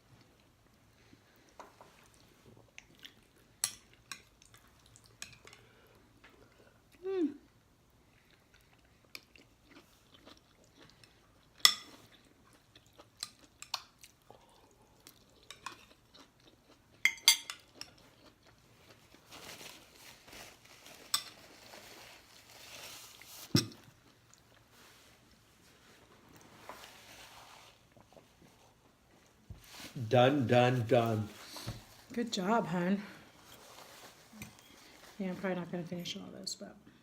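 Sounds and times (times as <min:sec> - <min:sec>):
faint chewing: 0:00.2 - 0:07.2, 0:07.9 - 0:25.1
cutlery clinking against dishes: 0:11.6 - 0:11.9, 0:17.0 - 0:17.8
rustling: 0:19.2 - 0:23.6, 0:24.7 - 0:28.6, 0:33.4 - 0:35.2.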